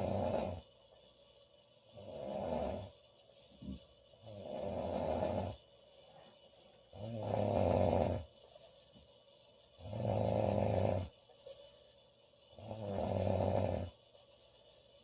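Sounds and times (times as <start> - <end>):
person snoring loudly: 0.0 - 0.6, 2.0 - 2.9, 4.2 - 5.6, 6.9 - 8.3, 9.8 - 11.1, 12.6 - 14.0.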